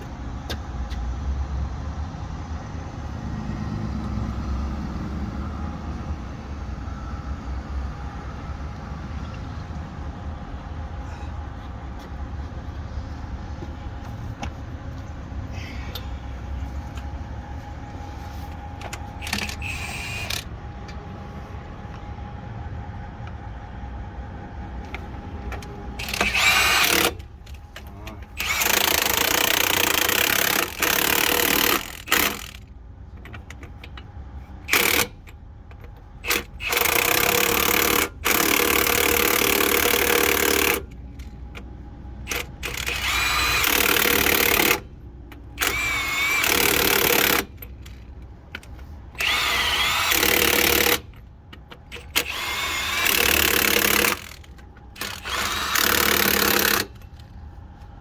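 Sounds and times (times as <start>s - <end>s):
steady low hum: 6.0s - 30.8s
pneumatic impact wrench: 18.9s - 20.5s, 26.0s - 27.6s, 28.3s - 32.7s, 34.6s - 35.3s, 36.2s - 41.3s, 42.2s - 44.9s, 45.5s - 57.3s.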